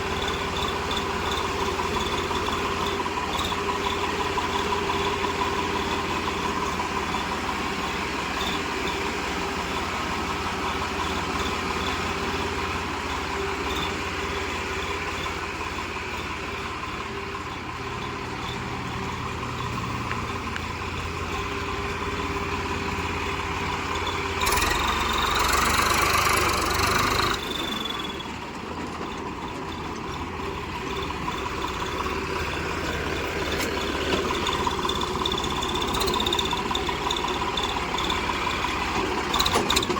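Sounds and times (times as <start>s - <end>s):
tractor diesel engine idling: 0.0s - 39.9s
turbo whistle rush: 24.4s - 28.3s.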